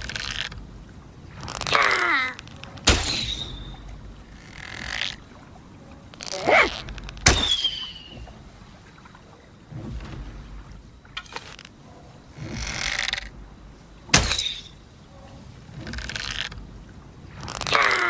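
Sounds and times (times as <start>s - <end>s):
bow creaking draw: 4.3s - 5.2s, 9.7s - 13.4s, 15.7s - 16.6s.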